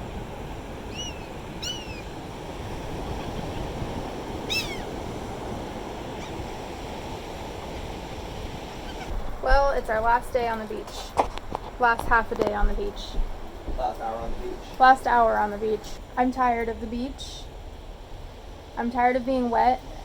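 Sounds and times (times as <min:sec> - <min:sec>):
ocean surf washing onto beach: 0:00.0 - 0:20.0
bird calls rising and falling: 0:00.8 - 0:02.2, 0:04.4 - 0:05.0, 0:06.1 - 0:06.5.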